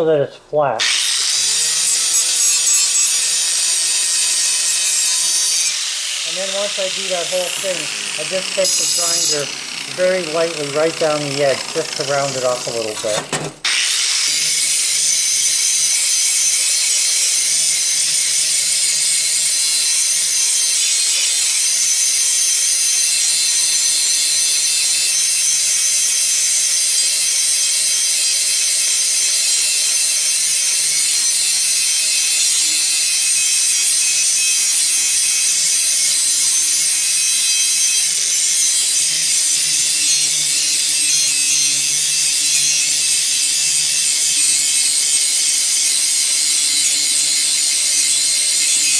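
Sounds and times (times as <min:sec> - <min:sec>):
metal grinding hiss: 0:00.8 - 0:24.8, 0:29.4 - 0:48.9
grinder motor hum: 0:00.8 - 0:48.9.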